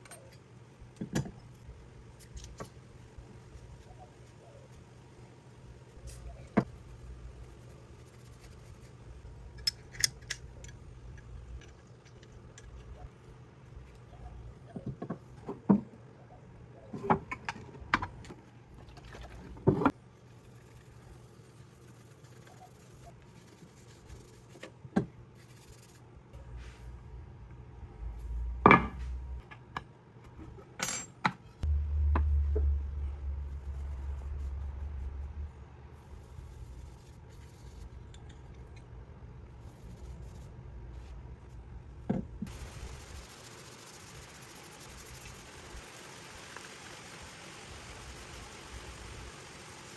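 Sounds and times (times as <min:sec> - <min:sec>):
low steady hum: 0:00.0 - 0:49.9
metal plane parts clicking: 0:09.5 - 0:12.8
low hum: 0:31.6 - 0:49.9.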